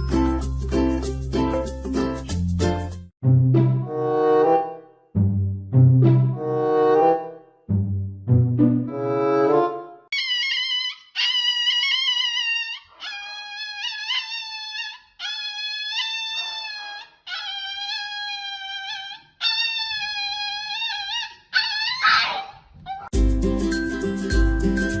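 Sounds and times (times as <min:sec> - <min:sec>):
music: 0:00.0 - 0:10.0, 0:23.2 - 0:25.0
dog howling: 0:19.8 - 0:23.1.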